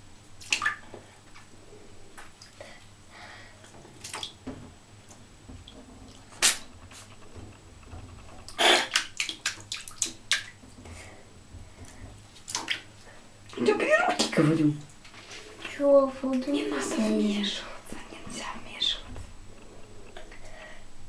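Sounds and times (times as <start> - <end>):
water splashing in a bathtub: 0.0 - 19.4.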